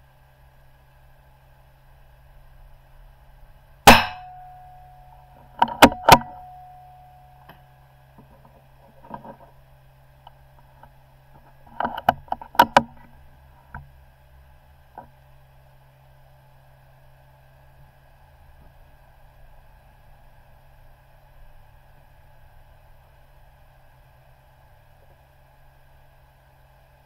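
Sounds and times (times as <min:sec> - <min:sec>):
rifle shot: 0:03.9 - 0:04.5.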